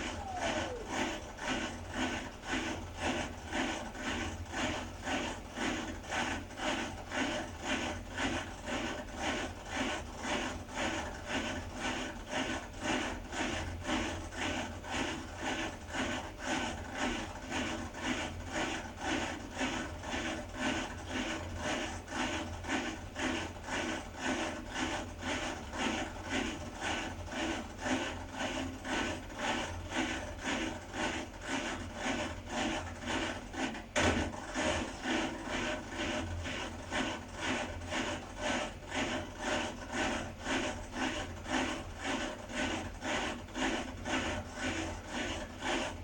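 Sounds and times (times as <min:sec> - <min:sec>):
washer low hum: 0:00.0 - 0:04.2, 0:33.0 - 0:40.1
washer rhythmic rubbing scrape: 0:00.0 - 0:46.0.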